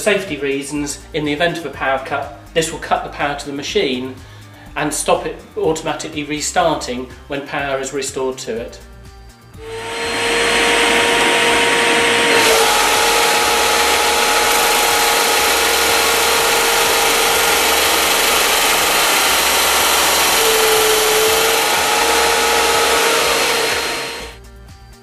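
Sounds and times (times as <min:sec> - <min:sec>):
belt and disc sander running: 0:09.6 - 0:24.4.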